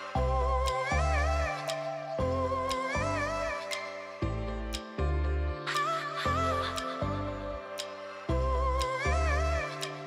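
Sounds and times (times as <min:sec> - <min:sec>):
wavering melody: 0:00.0 - 0:10.0
deep bass line: 0:00.2 - 0:01.5, 0:02.2 - 0:03.6, 0:04.2 - 0:05.6, 0:06.3 - 0:07.6, 0:08.3 - 0:09.7.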